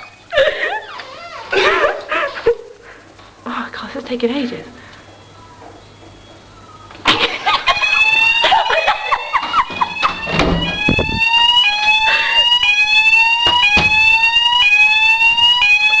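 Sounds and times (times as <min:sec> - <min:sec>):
fire alarm sweep tone: 0:07.4 - 0:16.0
sharp knocks: 0:13.4 - 0:14.1.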